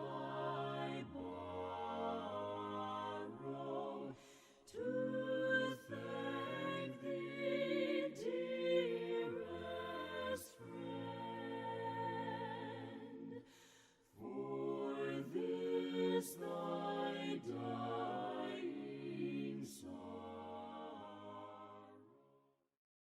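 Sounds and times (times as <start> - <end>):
group singing a hymn a cappella: 0.0 - 22.1.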